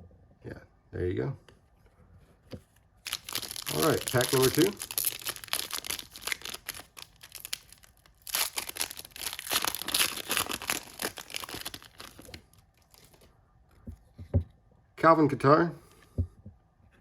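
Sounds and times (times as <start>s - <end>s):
foil wrapper crinkling: 3.0s - 13.3s.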